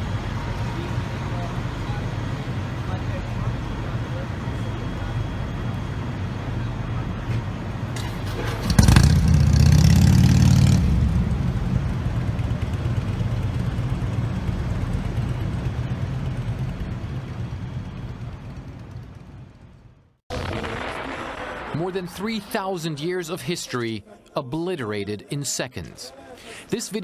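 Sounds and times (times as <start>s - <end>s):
heavy engine rumbling: 0.0s - 20.2s.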